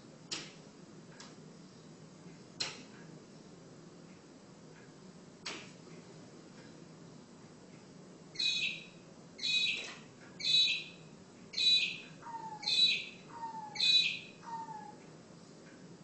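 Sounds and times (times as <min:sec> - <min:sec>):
bird harsh rasping call: 0:08.4 - 0:09.8, 0:10.4 - 0:10.9, 0:11.6 - 0:15.0.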